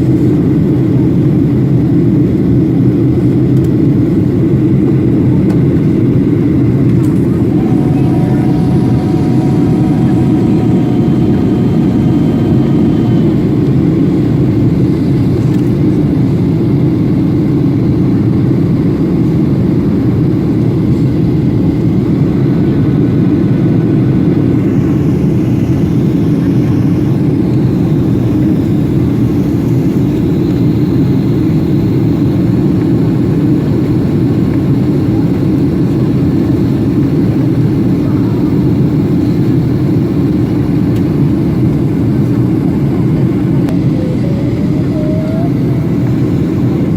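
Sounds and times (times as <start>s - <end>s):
airliner engine roar: 0.0s - 46.9s
faint high steady tones: 7.1s - 15.0s.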